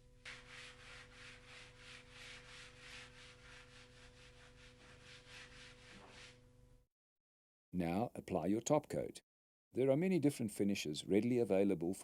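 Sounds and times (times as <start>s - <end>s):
sandpaper rubbing on wood: 0.2s - 6.4s.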